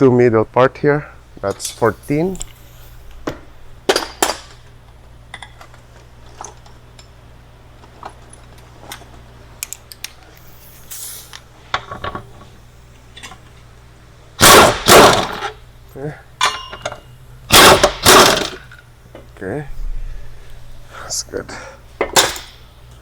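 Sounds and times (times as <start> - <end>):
steady low hum: 0.0 - 23.0
sharp metal knocks: 14.4 - 15.5, 16.4 - 18.6
hand tools clinking on metal: 16.4 - 17.1.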